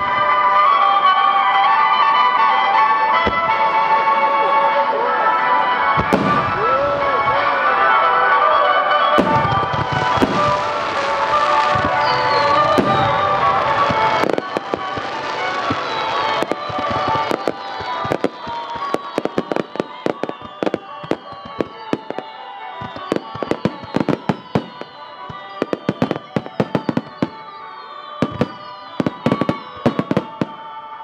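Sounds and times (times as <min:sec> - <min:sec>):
background music: 0:00.0 - 0:31.0
fireworks booming: 0:05.7 - 0:31.0
fireworks crackling pops: 0:06.0 - 0:07.2, 0:09.1 - 0:31.0.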